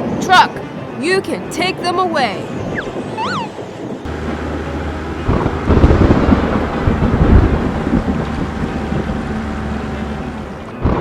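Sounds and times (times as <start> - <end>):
rolling thunder rumble: 4.1 - 9.8.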